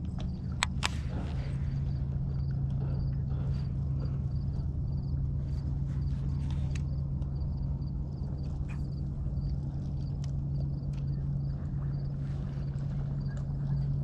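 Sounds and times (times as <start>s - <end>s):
boat motor humming: 0.0s - 14.0s.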